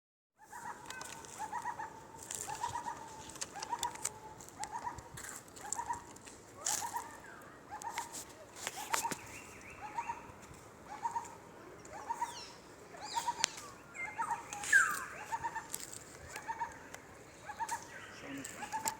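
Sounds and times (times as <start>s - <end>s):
higher repeated bird call: 8.8s - 18.9s
sharp high bird chirps: 12.0s - 15.7s.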